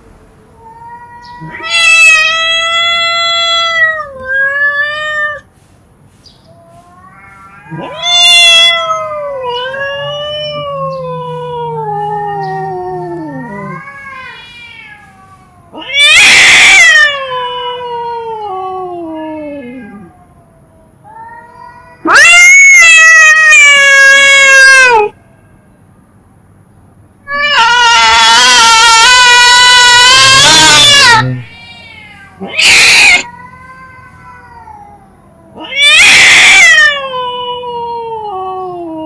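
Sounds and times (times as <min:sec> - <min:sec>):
cat meowing: 0:00.6 - 0:05.5, 0:06.6 - 0:25.2, 0:27.3 - 0:39.0.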